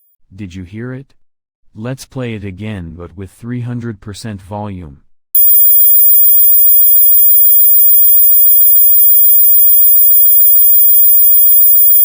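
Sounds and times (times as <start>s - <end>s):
high-pitched electronic test tone: 5.4s - 12.0s.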